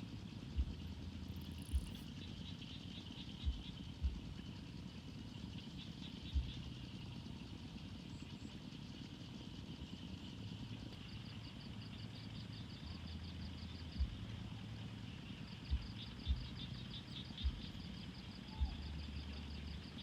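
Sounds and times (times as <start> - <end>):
faint low hum: 0.0 - 20.0
dull low thumps: 0.6 - 2.0, 3.4 - 4.4, 6.3 - 6.8, 13.8 - 14.4, 15.7 - 16.8, 17.4 - 17.8, 18.6 - 19.0.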